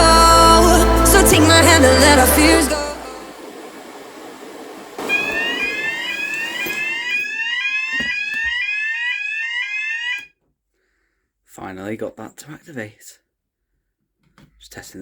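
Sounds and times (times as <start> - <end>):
rushing noise: 0.0 - 7.3
fire alarm sounders sweeping: 5.0 - 10.3.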